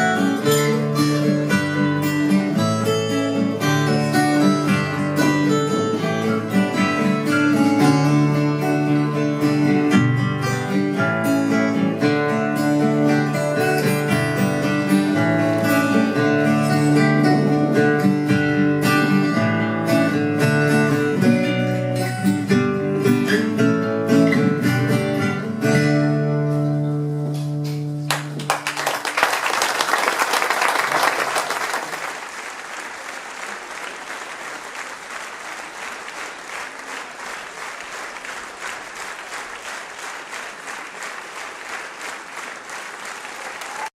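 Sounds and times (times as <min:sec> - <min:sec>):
applause: 0:00.0 - 0:10.0, 0:12.0 - 0:18.4, 0:27.4 - 0:43.9
guitar music: 0:00.0 - 0:28.4.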